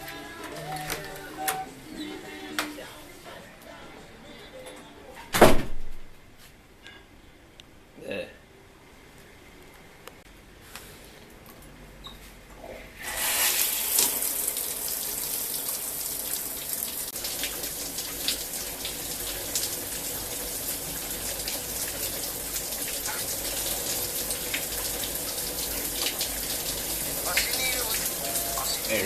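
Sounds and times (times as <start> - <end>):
tap water running into sink: 13.1 - 29.0.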